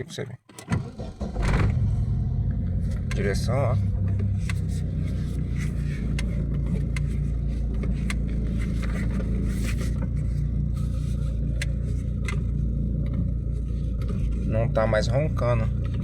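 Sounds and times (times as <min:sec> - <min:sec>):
car engine idling: 0:00.8 - 0:16.0
light clicks and scrapes: 0:04.2 - 0:12.6.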